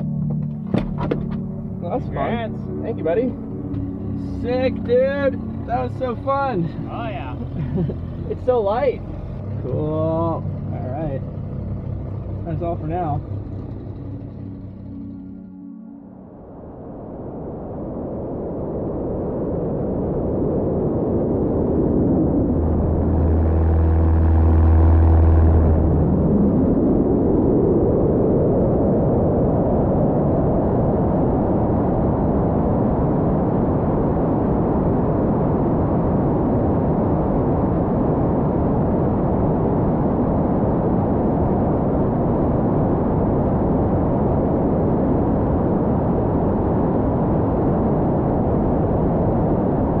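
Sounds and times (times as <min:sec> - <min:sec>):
vehicle engine noise: 0:00.0 - 0:19.3, 0:19.9 - 0:50.0
rising tone: 0:00.0 - 0:19.4, 0:20.8 - 0:28.2.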